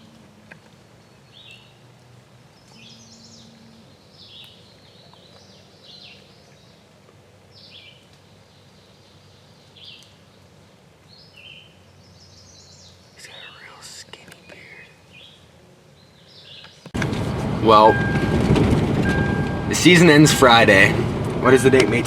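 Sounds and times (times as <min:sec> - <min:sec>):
songbirds singing: 0:00.0 - 0:17.0.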